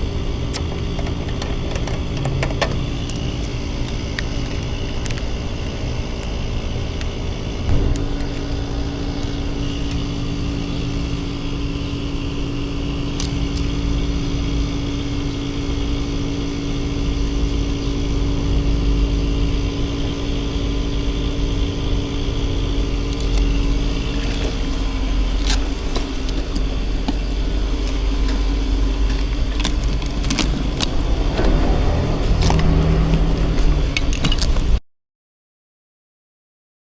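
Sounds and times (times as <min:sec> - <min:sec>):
car engine and road drone: 0:00.0 - 0:34.8
steady hum: 0:00.0 - 0:34.8.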